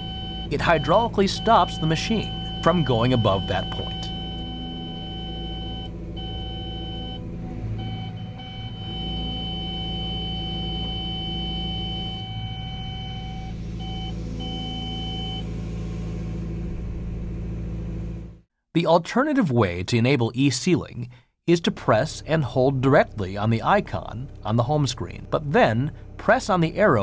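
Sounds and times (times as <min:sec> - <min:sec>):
excavator warning tone beeping: 0:00.0 - 0:15.4
diesel engine and hydraulics hum: 0:00.0 - 0:18.4.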